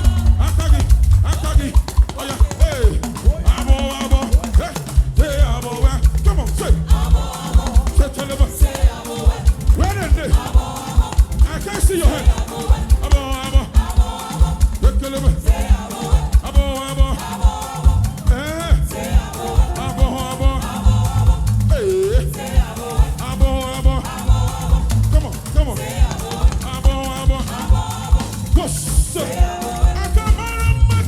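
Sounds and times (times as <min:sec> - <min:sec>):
fast drum beat: 0:00.0 - 0:31.0
live gospel band music: 0:00.0 - 0:31.0.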